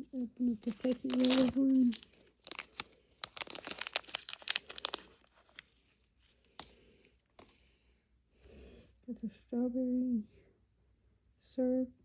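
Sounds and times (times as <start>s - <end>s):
plastic wrapper crinkling: 0.2s - 5.8s.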